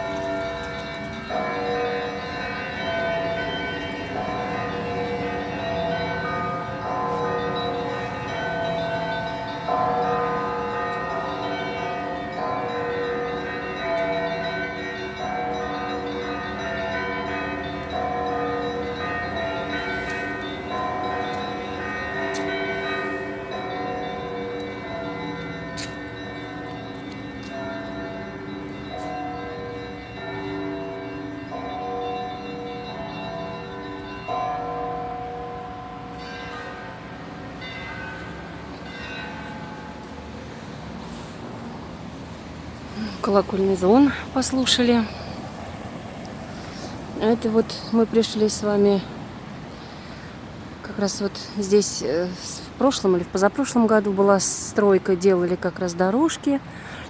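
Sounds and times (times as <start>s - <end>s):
church bells ringing a peal: 0.0s - 57.0s.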